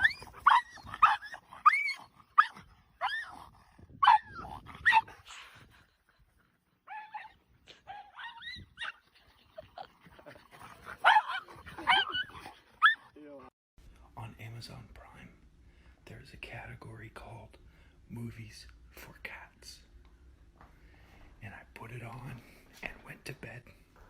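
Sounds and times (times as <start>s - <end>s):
small dog yipping: 0.0s - 3.4s, 4.0s - 5.1s, 6.9s - 9.0s, 11.0s - 13.0s.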